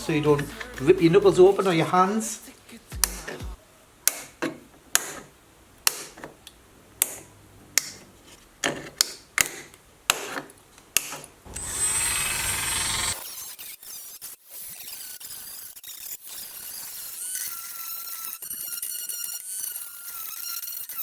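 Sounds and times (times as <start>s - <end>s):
whirring with high whine: 11.5s - 13.3s
snippers cutting: 11.5s - 13.9s.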